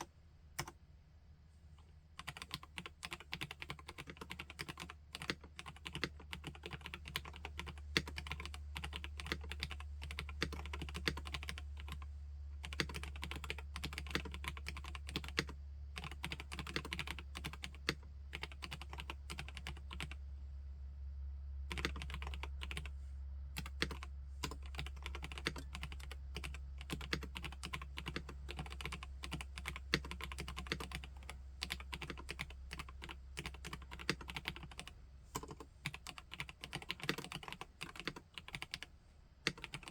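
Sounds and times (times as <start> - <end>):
mechanical keyboard typing: 0.0 - 0.8, 2.2 - 12.0, 12.6 - 20.2, 21.7 - 22.9, 23.6 - 38.9, 39.5 - 39.9.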